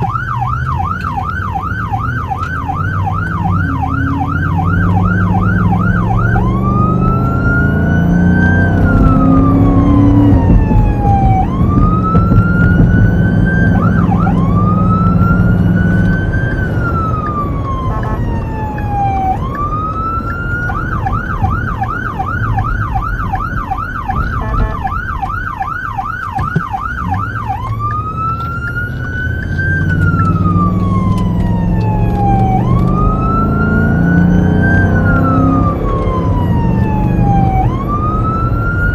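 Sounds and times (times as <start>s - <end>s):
electronic siren wailing and yelping: 0.0s - 38.9s
truck engine and road noise: 0.0s - 38.9s.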